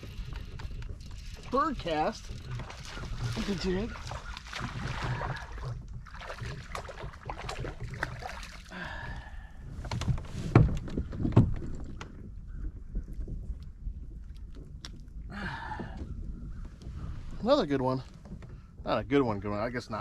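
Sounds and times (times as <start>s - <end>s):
fish splashing: 0.0s - 9.3s.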